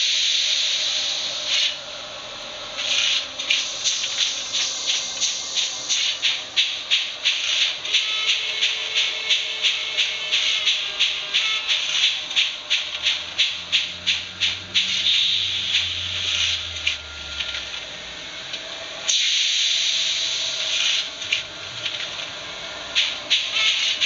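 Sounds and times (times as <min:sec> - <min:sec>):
steam hiss: 0:00.0 - 0:01.8, 0:02.8 - 0:16.7, 0:19.1 - 0:21.1
model steam locomotive chuffs: 0:00.0 - 0:17.9, 0:18.6 - 0:24.0.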